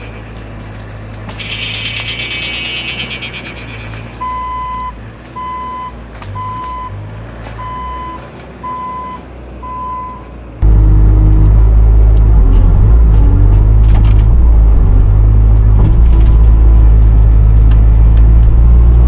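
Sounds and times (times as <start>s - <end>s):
diesel engine running: 0.0s - 19.0s
backup alarm beeping: 1.4s - 7.0s, 7.6s - 10.2s.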